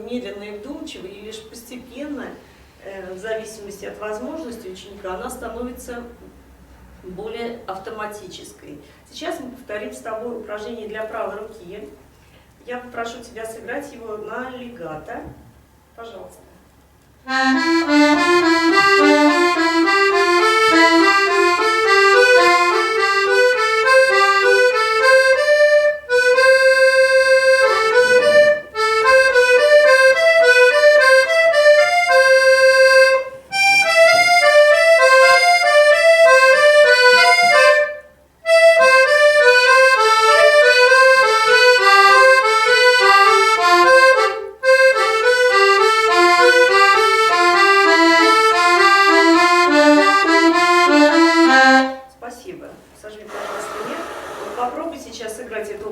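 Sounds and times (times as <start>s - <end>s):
accordion runs of notes: 17.3s - 52.1s.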